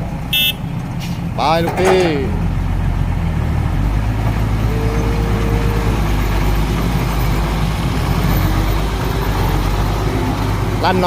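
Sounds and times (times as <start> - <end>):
heavy diesel engine rumbling: 0.0 - 11.0.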